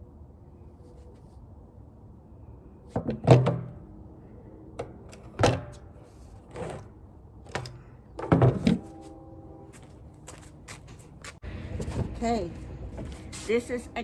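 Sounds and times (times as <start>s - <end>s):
hollow knocks on metal barrel: 3.0s - 3.8s.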